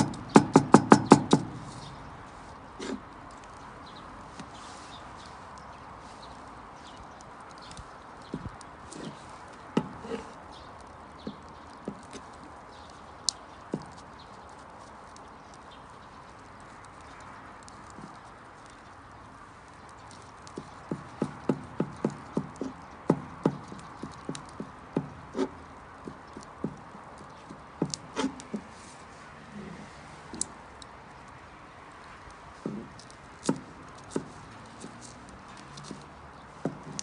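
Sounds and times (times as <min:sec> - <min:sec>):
sharp knocks: 0:00.0 - 0:01.6.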